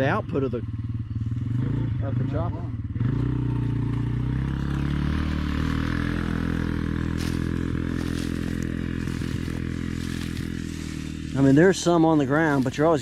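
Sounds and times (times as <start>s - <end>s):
combine harvester engine drone: 5.8s - 13.0s.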